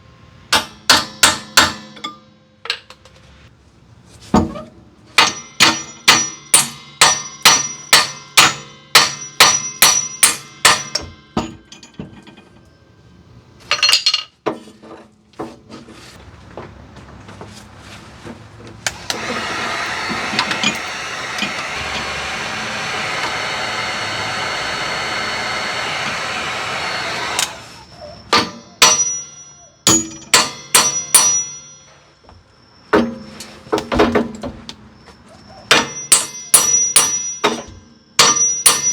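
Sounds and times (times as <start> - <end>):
hammer striking steel: 0.5 - 2.9, 5.2 - 11.6, 28.3 - 31.9, 35.7 - 38.9
steady hissing: 18.9 - 27.9.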